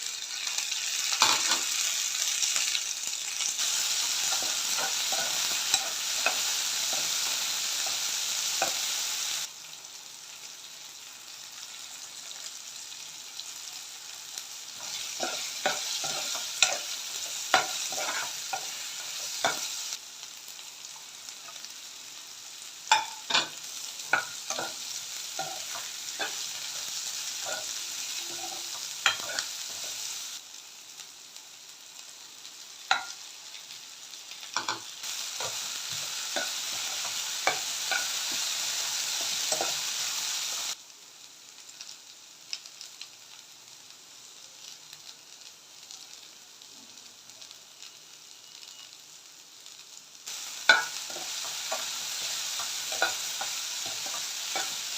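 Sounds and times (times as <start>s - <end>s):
food sizzling in oil: 0.0s - 54.9s
spatula scraping a pan: 14.8s - 19.7s.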